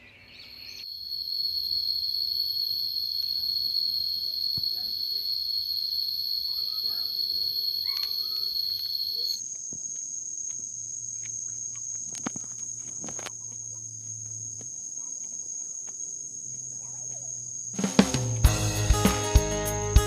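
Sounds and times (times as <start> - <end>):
insects droning: 0.0 - 18.6
music with drum beat: 17.8 - 20.0.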